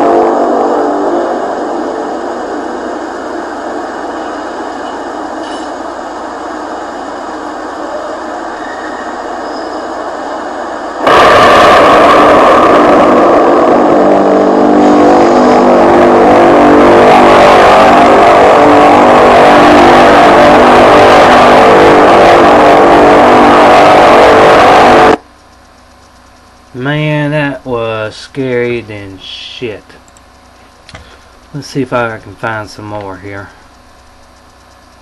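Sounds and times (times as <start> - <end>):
eerie drone of overlapping tones: 0.0 - 35.0.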